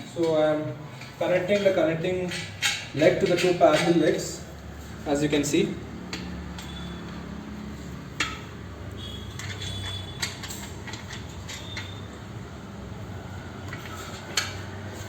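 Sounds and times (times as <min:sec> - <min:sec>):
metal frame parts clinking: 0:00.2 - 0:04.4, 0:08.1 - 0:12.3
high metallic ringing: 0:08.2 - 0:12.2.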